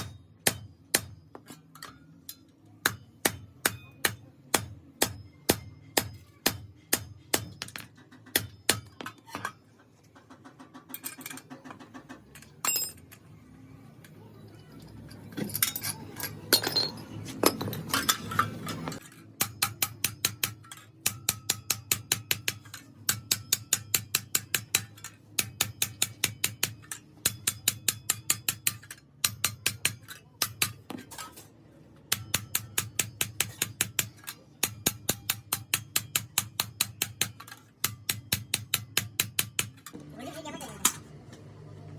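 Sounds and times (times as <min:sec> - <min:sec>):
hammer tapping on metal: 0:18.9 - 0:30.9, 0:32.1 - 0:39.9.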